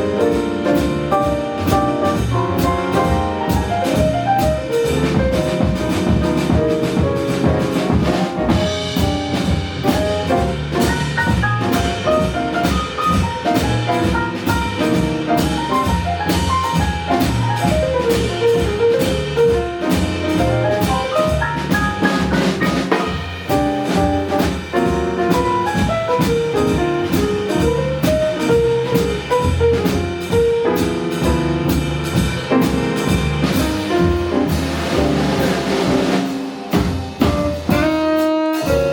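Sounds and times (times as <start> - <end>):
jazz band playing: 0.0 - 38.9.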